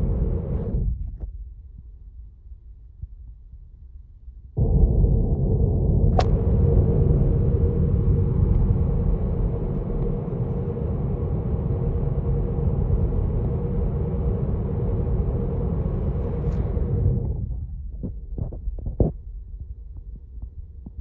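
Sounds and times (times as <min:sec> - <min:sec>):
road and tyre rumble: 0:00.0 - 0:00.9, 0:04.6 - 0:18.0
faint steady hum: 0:00.0 - 0:21.0.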